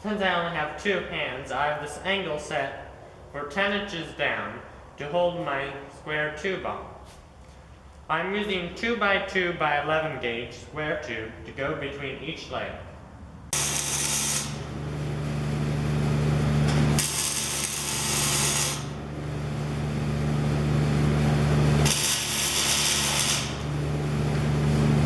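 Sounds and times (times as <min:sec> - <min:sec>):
low electrical hum: 0:00.0 - 0:25.0
arc welding crackling hiss: 0:13.5 - 0:15.2, 0:15.8 - 0:19.1, 0:21.5 - 0:25.0.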